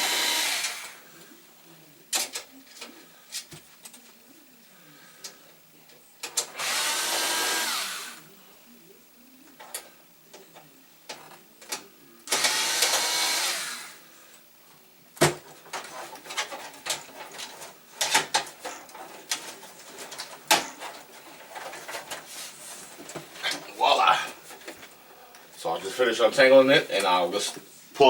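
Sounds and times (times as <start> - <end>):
power driver whining: 0.0 - 1.1, 6.3 - 8.3, 12.2 - 14.0.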